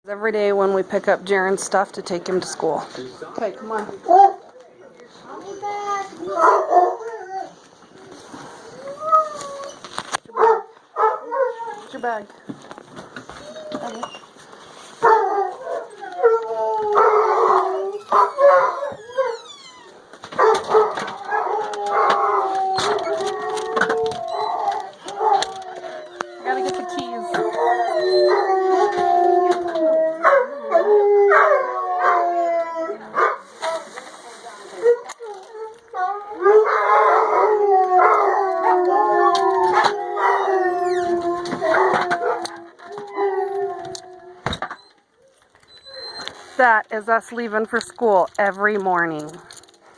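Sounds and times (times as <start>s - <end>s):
dogs howling: 6.2s - 12.3s, 15.0s - 33.4s, 34.8s - 46.3s.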